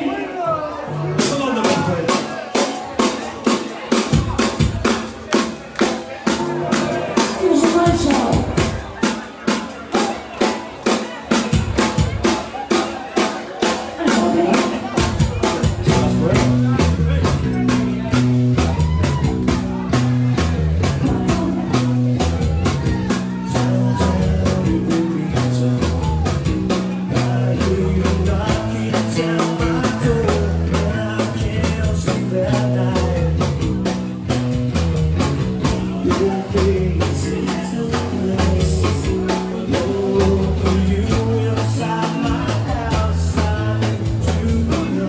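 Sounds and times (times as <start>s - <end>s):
bass guitar: 0.0s - 45.0s
drum kit beat: 1.2s - 45.0s
person singing: 14.0s - 17.9s, 18.5s - 34.0s, 35.6s - 45.0s.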